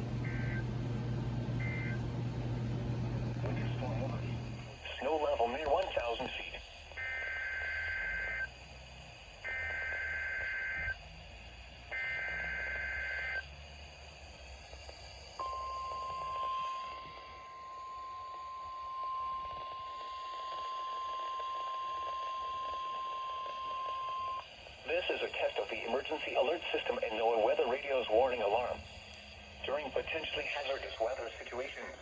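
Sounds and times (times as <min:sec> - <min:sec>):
steady warning alarm tone: 0:00.0 - 0:04.7, 0:07.0 - 0:08.6, 0:09.4 - 0:11.0, 0:11.9 - 0:13.6, 0:15.4 - 0:24.6.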